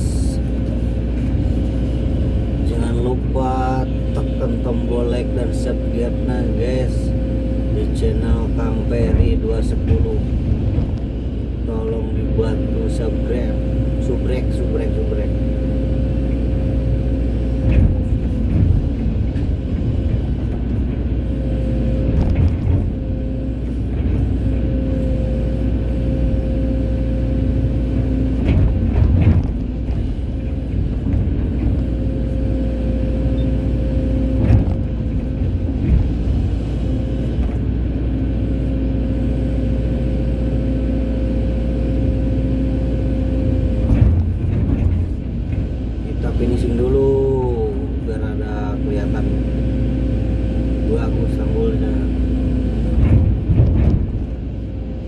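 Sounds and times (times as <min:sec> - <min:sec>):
excavator diesel engine whining: 0:00.0 - 0:55.0
excavator bucket knocks and clunks: 0:52.9 - 0:54.5.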